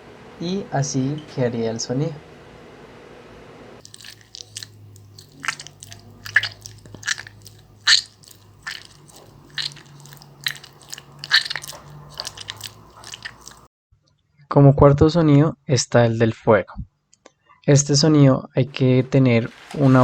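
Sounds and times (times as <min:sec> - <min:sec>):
wet crunching of mashed fruit: 0:03.8 - 0:13.7.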